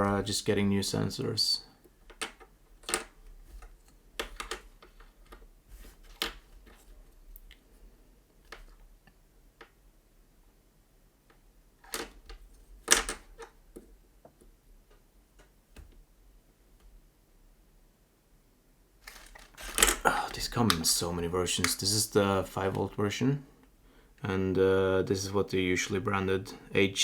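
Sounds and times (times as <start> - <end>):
plastic bags rustling: 19.0 - 21.1.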